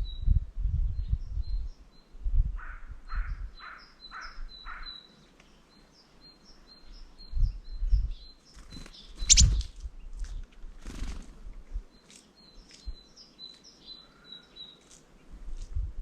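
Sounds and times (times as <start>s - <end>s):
small birds chirping: 3.1s - 15.4s.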